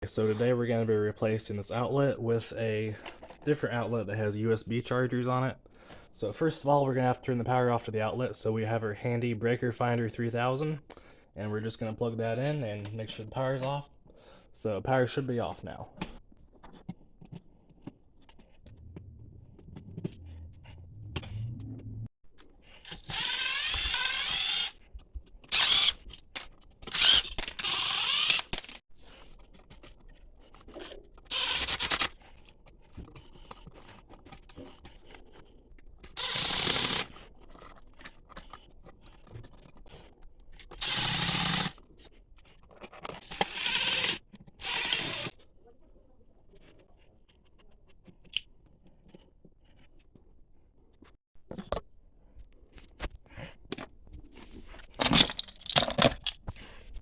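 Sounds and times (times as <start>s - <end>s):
small clicks and scrapes: 16.0s - 23.1s, 24.8s - 43.6s, 46.4s - 57.0s
cordless drill running: 22.8s - 24.8s, 25.5s - 26.0s, 26.9s - 28.7s, 31.3s - 32.1s, 36.2s - 37.1s, 40.8s - 41.8s, 43.2s - 45.3s.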